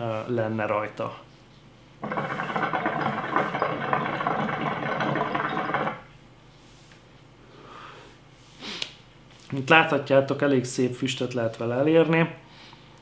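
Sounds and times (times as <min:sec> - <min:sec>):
hookah water bubbling: 0:02.0 - 0:06.1.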